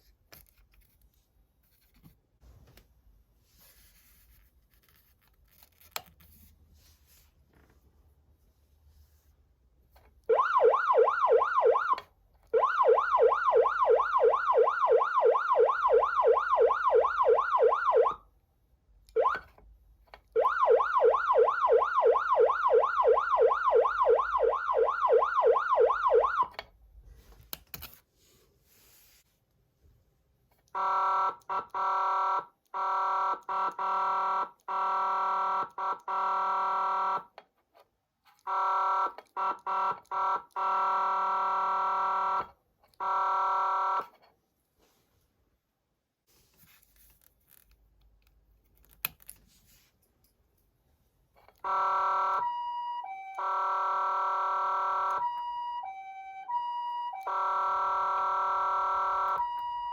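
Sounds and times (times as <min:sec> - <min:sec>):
electronic yelp siren: 0:10.3 - 0:18.2, 0:19.2 - 0:19.4, 0:20.4 - 0:26.5, 0:30.8 - 0:37.3, 0:38.5 - 0:44.1, 0:51.6 - 0:59.9.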